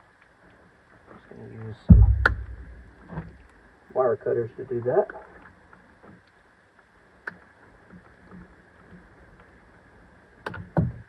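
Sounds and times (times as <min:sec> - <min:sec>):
faint ticks: 0:05.0 - 0:09.6.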